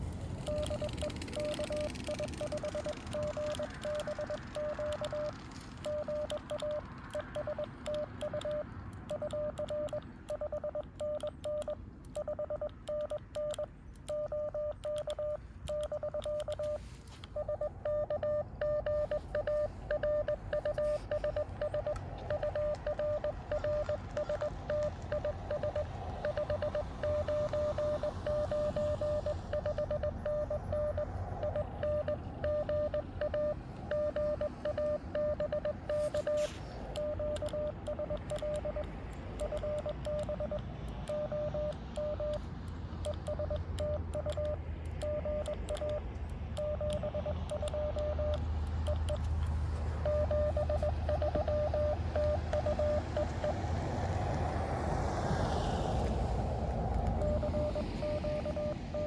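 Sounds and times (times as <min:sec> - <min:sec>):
morse code tone: 0:00.0 - 0:53.7, 0:57.0 - 0:59.0
radio band noise hiss: 0:35.8 - 0:37.8.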